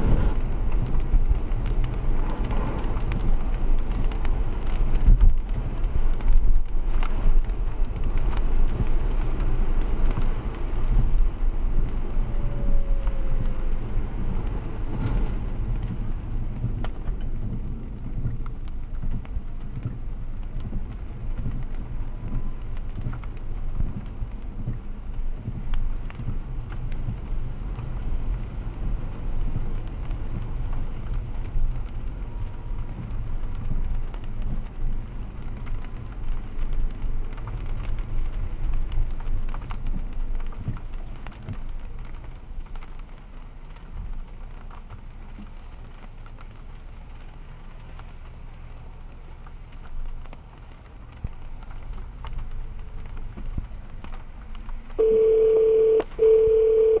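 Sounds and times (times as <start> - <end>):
rain falling: 0.0 - 57.0
steady low rumble: 0.0 - 57.0
horn blasts: 55.0 - 57.0.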